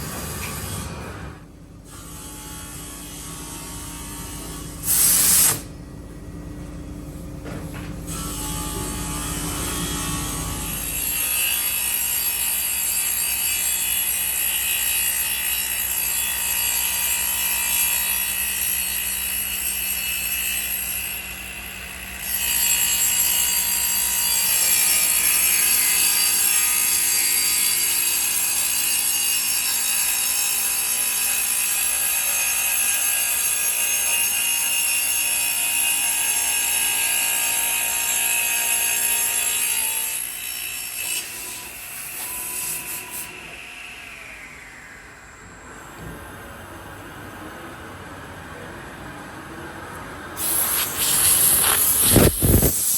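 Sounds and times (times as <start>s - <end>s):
router cutting hardwood: 50.4s - 52.9s.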